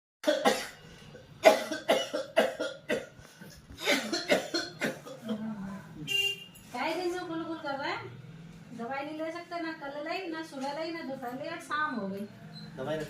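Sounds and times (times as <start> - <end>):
person coughing in fits: 0.2 - 0.8, 1.4 - 3.2, 3.8 - 5.5.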